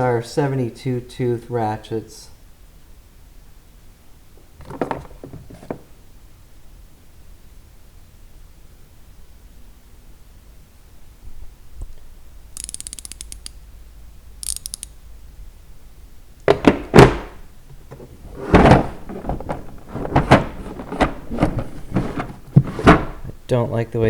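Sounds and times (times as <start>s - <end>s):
plastic drawers knocked shut: 4.6s - 5.9s, 16.5s - 23.4s
ratchet clicking: 12.6s - 13.6s, 14.4s - 15.0s.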